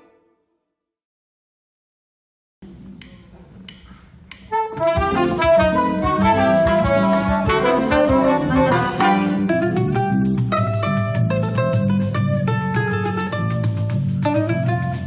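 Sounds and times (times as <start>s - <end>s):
band with horns playing: 4.5s - 10.8s.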